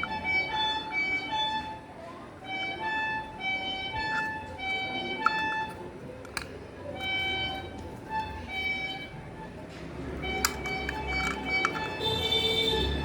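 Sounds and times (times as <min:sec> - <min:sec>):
instrumental background music: 0:00.0 - 0:13.0
clicks: 0:05.2 - 0:07.1, 0:10.3 - 0:12.1.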